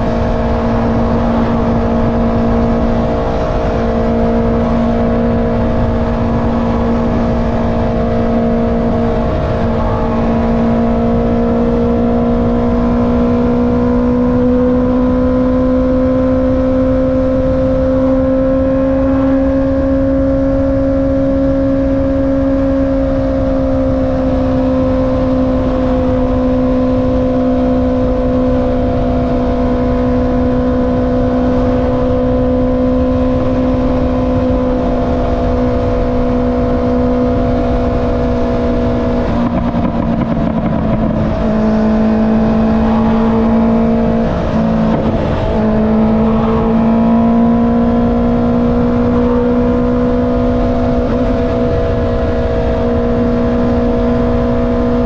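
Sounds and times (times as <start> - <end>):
motorcycle engine running: 0.0 - 55.0
wind rush: 0.0 - 55.0.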